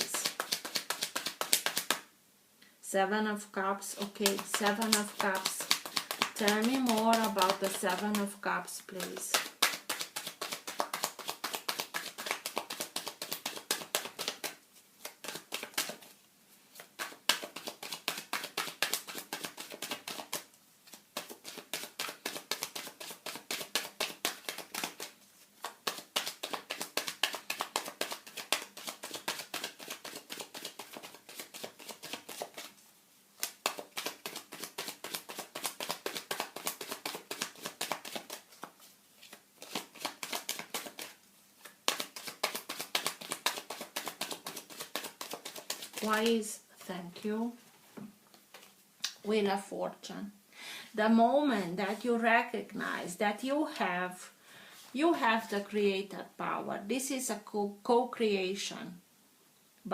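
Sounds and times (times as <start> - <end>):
cards being shuffled: 0.0 - 2.1, 4.0 - 16.1, 16.7 - 32.8, 33.4 - 46.5, 48.0 - 49.2.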